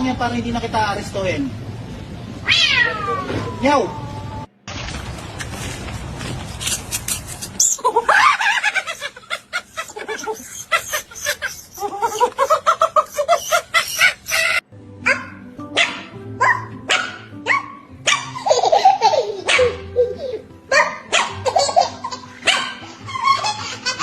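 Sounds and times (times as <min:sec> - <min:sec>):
dog whining or howling: 0:02.8 - 0:04.5
person laughing: 0:07.3 - 0:14.6
background music: 0:14.6 - 0:24.0
dog barking: 0:15.0 - 0:18.4, 0:19.4 - 0:19.8, 0:20.7 - 0:21.5, 0:22.4 - 0:22.9.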